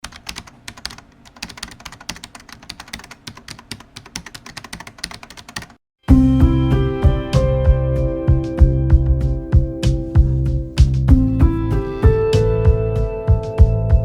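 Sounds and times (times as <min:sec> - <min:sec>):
typing on computer keyboard: 0:00.0 - 0:05.8
music: 0:06.0 - 0:14.0.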